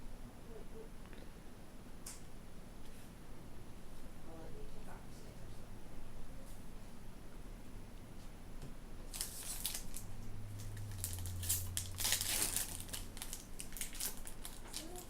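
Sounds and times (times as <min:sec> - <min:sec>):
foil wrapper crinkling and tearing: 0:09.1 - 0:15.0.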